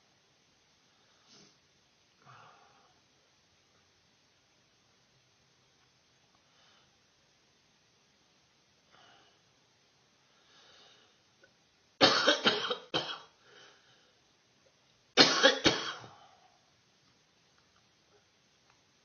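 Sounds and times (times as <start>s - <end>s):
faint breaths: 0.8s - 3.2s, 6.3s - 7.2s, 8.8s - 11.5s, 13.3s - 14.4s
person coughing harshly: 12.0s - 13.4s, 15.2s - 16.2s.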